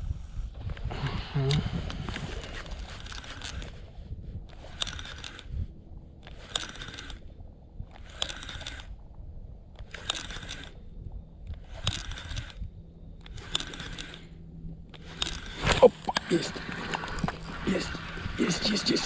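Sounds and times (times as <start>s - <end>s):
fishing reel whirring: 1.9s - 19.0s
reel knocking: 6.2s - 7.3s, 7.9s - 9.0s, 11.5s - 12.6s, 13.2s - 14.3s.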